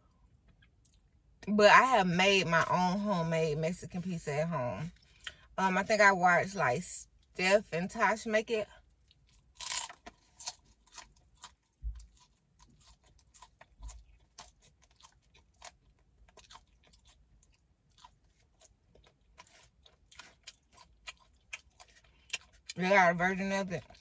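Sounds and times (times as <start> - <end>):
person chewing crunchy food: 8.8 - 22.8, 23.8 - 24.0.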